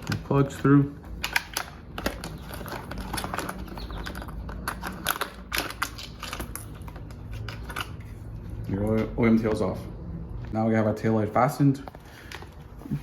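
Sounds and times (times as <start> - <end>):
plastic connectors clicking and rattling: 1.2 - 8.0.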